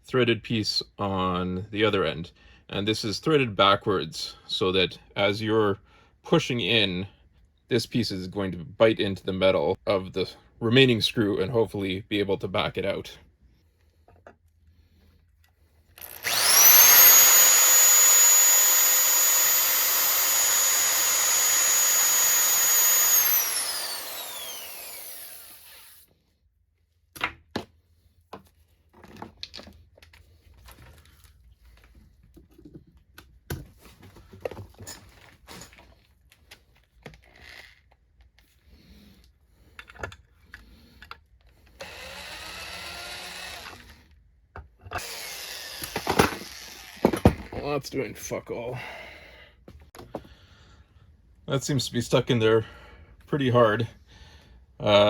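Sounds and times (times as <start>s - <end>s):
power drill whining: 16.0s - 26.0s, 41.7s - 44.1s, 45.0s - 47.5s.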